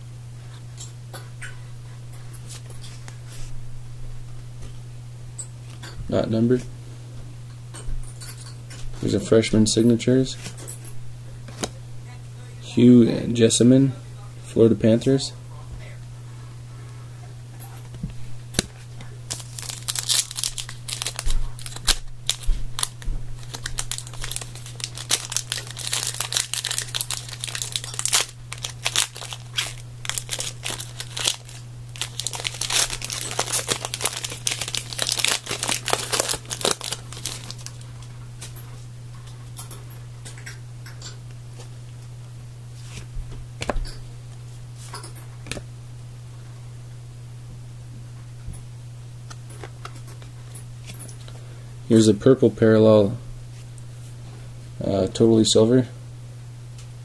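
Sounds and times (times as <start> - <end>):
low electrical hum: 0.0 - 57.0
plastic packaging crinkling and tearing: 19.3 - 37.9.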